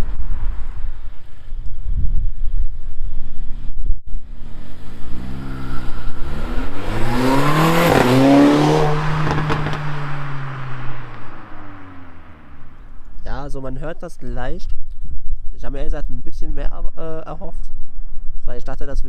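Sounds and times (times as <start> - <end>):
car accelerating past: 4.2 - 13.2.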